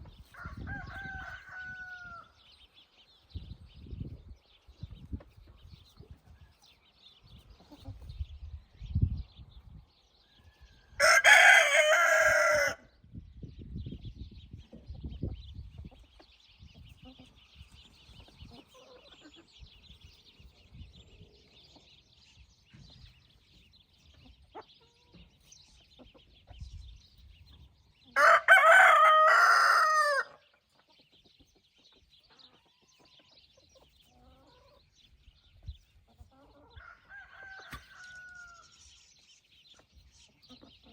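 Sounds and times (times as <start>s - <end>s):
rooster crowing: 0.4s - 2.3s, 11.0s - 12.8s, 28.2s - 30.3s, 36.8s - 38.7s.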